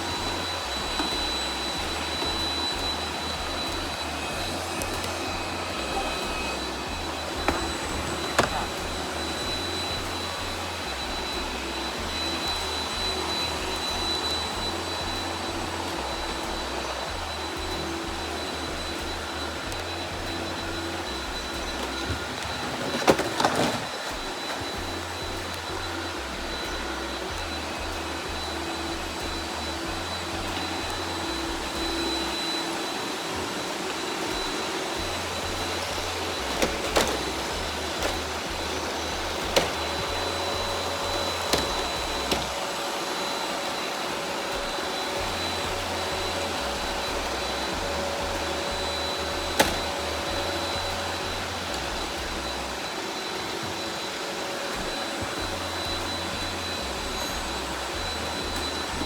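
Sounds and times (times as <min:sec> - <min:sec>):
robot vacuum motor whine: 0:00.0 - 0:59.0.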